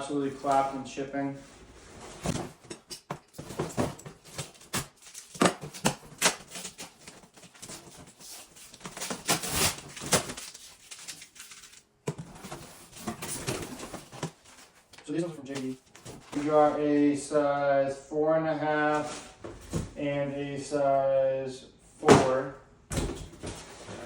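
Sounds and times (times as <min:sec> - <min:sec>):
packaging rustling and crinkling: 0:02.2 - 0:16.6.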